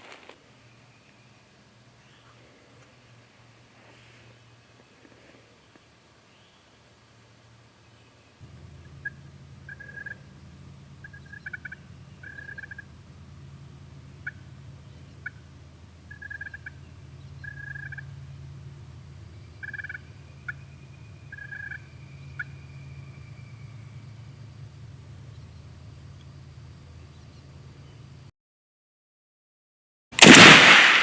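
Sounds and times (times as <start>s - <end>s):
steady low rumble: 7.1s - 28.3s
turkey call yelps and clucks: 9.0s - 10.2s, 11.0s - 12.9s, 14.2s - 14.5s, 15.2s - 15.4s, 16.1s - 16.8s, 17.4s - 18.1s, 19.6s - 20.7s, 21.3s - 22.6s.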